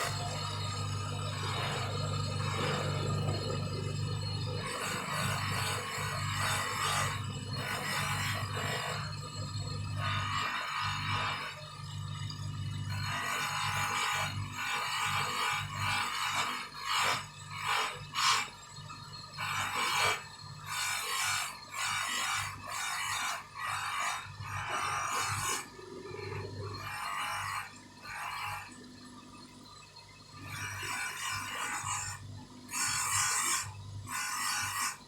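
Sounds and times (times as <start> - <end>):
low steady hum: 0.0 - 7.7.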